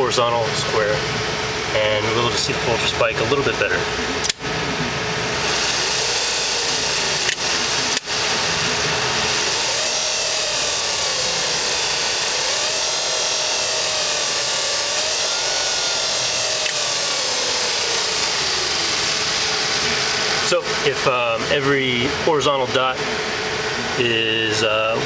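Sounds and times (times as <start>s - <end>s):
electric motor whirring: 0.0s - 25.0s
sharp clicks: 4.2s - 4.4s, 7.2s - 8.1s, 16.5s - 16.9s.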